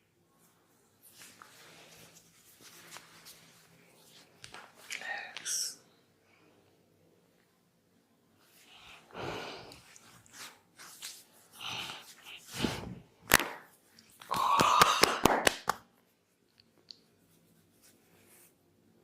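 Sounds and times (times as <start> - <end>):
hand slaps on head: 13.3 - 13.7, 14.3 - 15.8.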